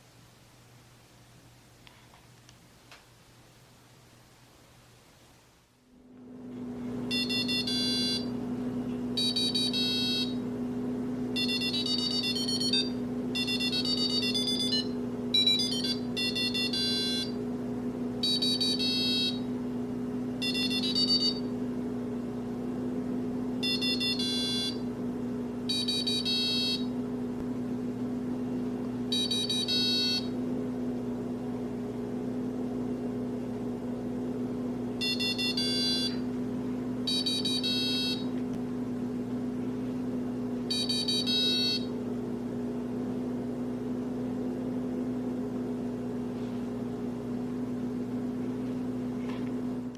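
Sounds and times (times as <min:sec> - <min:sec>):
steady low hum: 0:00.0 - 0:49.9
alarm clock beeping: 0:07.1 - 0:08.3, 0:09.2 - 0:10.4, 0:11.4 - 0:17.4, 0:18.2 - 0:19.5, 0:20.4 - 0:21.5, 0:23.6 - 0:24.8, 0:25.7 - 0:26.9, 0:29.1 - 0:30.4, 0:35.0 - 0:36.2, 0:37.1 - 0:38.3, 0:40.7 - 0:41.9.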